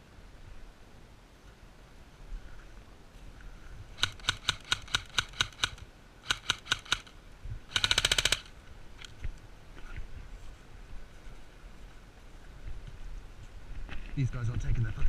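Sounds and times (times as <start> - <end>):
airsoft rifle shots: 4.0 - 8.6.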